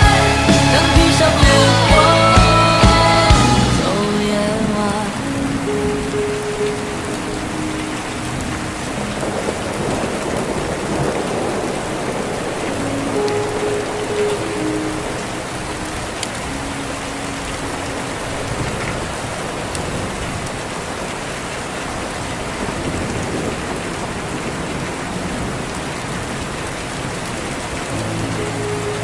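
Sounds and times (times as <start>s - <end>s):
heavy rain falling: 0.0s - 29.0s.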